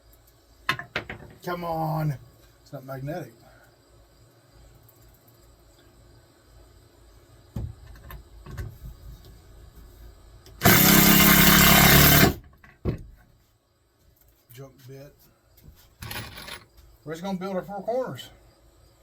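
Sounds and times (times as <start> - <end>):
cordless screw gun running: 10.6 - 12.4.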